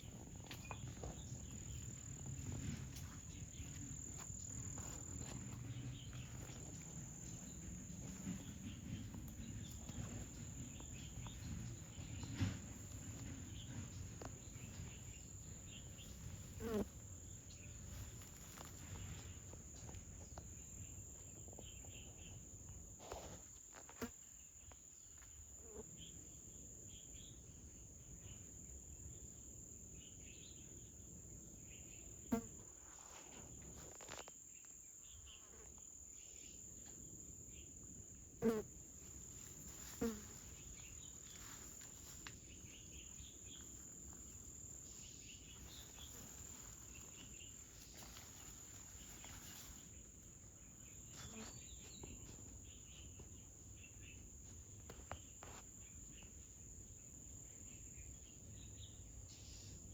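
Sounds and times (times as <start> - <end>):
insect chorus trilling: 0.0 - 19.3, 33.7 - 59.9.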